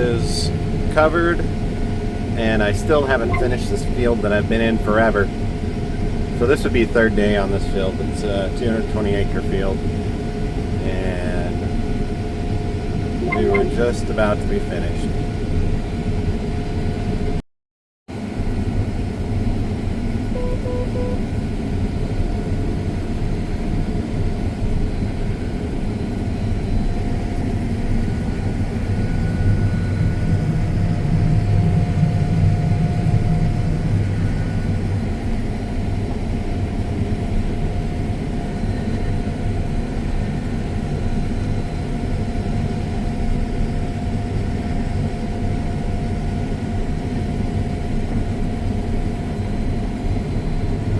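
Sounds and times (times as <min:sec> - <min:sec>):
combine harvester droning: 0:00.0 - 0:05.4, 0:13.2 - 0:15.1, 0:20.2 - 0:21.6
short beeps: 0:03.0 - 0:03.6, 0:13.2 - 0:14.0, 0:20.4 - 0:21.3.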